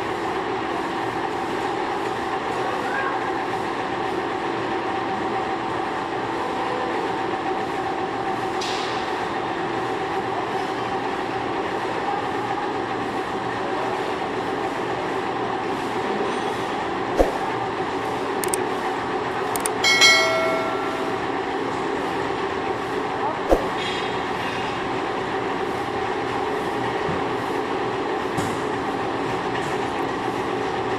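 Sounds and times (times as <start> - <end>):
metalworking machinery humming: 16.7 - 25.7
sharp click: 19.6 - 19.8.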